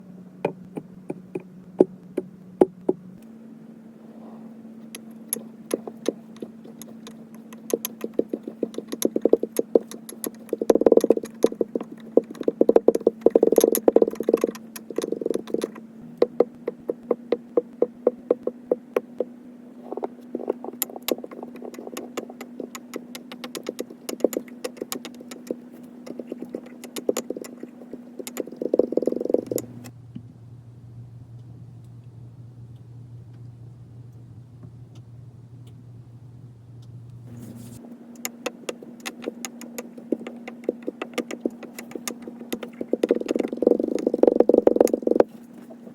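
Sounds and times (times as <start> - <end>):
steady low hum: 0.0 - 45.9.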